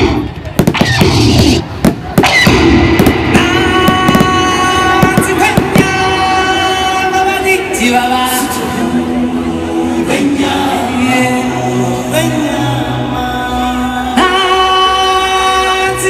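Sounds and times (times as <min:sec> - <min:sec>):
sharp cracks: 0:00.0 - 0:04.4
loud music with singing: 0:00.0 - 0:16.0.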